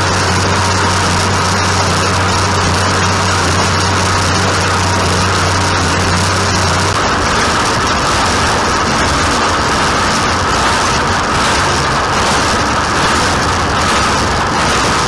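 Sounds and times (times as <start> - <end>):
tractor engine drone: 0.0 - 15.0.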